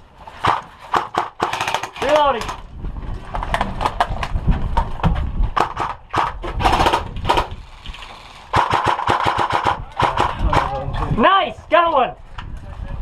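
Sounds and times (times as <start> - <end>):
airsoft rifles firing bursts: 0.4 - 2.2, 8.5 - 10.8.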